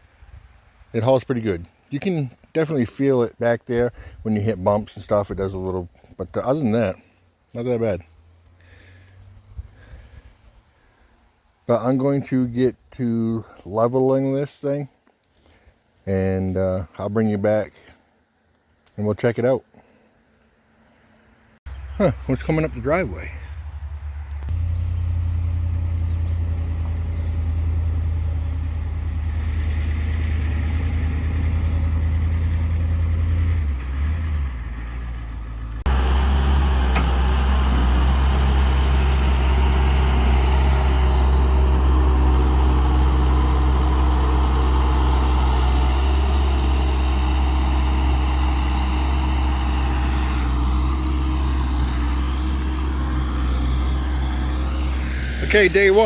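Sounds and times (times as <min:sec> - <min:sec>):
heavy vehicle engine running: 0:21.7 - 0:56.0.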